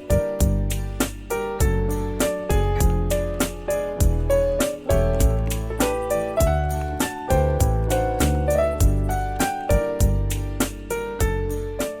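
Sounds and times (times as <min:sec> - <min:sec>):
bass line: 0:00.0 - 0:11.8.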